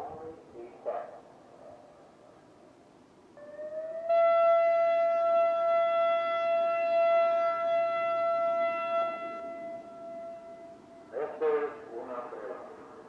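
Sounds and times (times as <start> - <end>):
electronic siren steady tone: 3.4 - 11.3.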